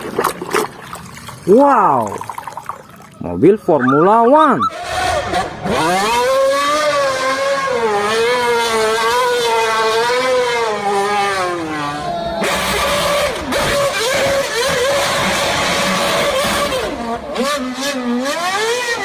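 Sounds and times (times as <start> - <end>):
race car engine revving: 4.6 - 19.0.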